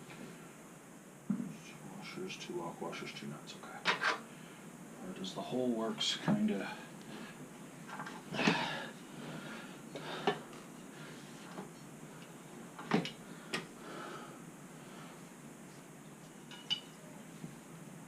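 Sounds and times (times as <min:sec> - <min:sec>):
light metallic clinks and knocks: 0:16.4 - 0:17.0.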